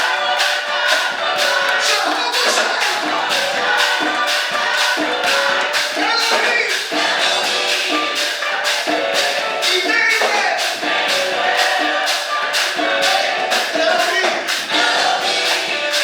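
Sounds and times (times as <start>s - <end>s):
church music with singing: 0.0s - 16.0s
sharp percussion beat: 0.0s - 16.0s.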